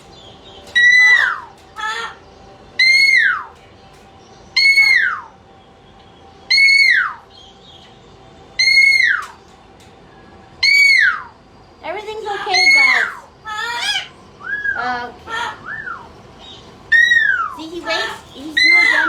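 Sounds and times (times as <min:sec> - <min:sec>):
parrot whistled call: 0:02.8 - 0:03.5, 0:04.6 - 0:05.3, 0:06.5 - 0:07.2, 0:08.6 - 0:09.4, 0:10.6 - 0:11.3, 0:12.5 - 0:16.1, 0:16.9 - 0:19.0.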